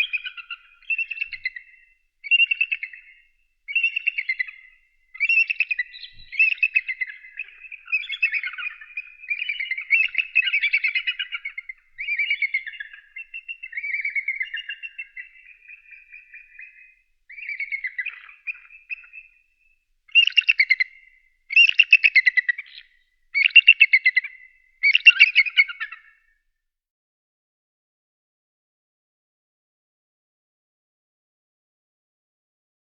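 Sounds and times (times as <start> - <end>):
eagle chattering calls: 3.7 - 19.3, 20.1 - 22.8, 23.4 - 26.0.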